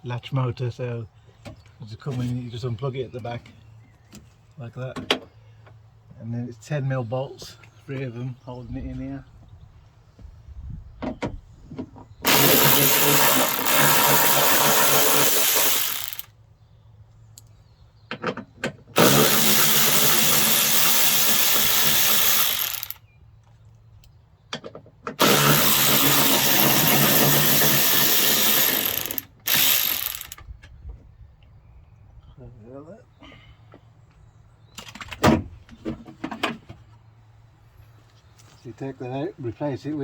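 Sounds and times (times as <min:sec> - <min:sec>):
cordless power tool running: 0:12.2 - 0:16.3, 0:19.0 - 0:23.0, 0:25.2 - 0:30.4.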